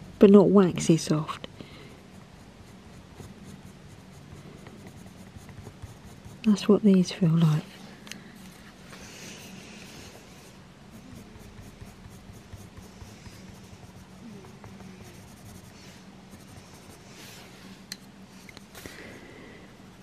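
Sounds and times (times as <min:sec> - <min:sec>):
low steady hum: 0:00.0 - 0:20.0
pencil scratching on paper: 0:02.0 - 0:06.7, 0:08.6 - 0:17.4.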